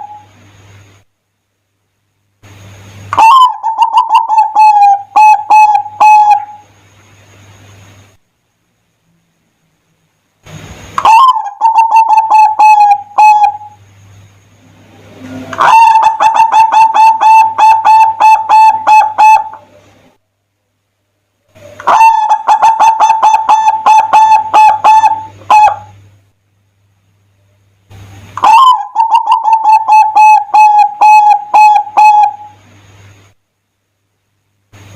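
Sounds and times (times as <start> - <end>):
dove cooing: 0.0 - 0.3, 3.2 - 6.6, 11.0 - 13.8, 15.2 - 19.9, 21.5 - 26.0, 28.4 - 32.6.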